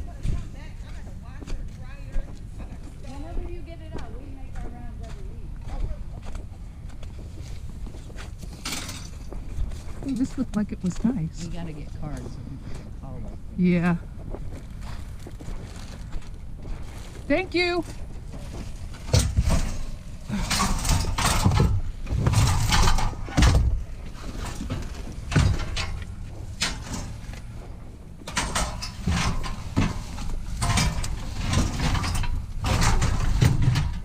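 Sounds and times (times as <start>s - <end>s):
scrap items knocking and clattering: 8.2s - 9.3s, 18.2s - 27.5s, 28.2s - 34.0s
heavy thuds: 17.3s - 34.0s.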